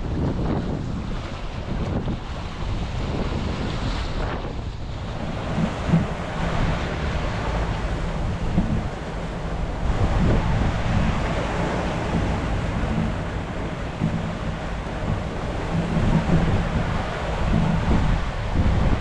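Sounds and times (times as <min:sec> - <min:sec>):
sea rushing: 0:00.0 - 0:19.0
wind buffeting microphone: 0:00.0 - 0:19.0.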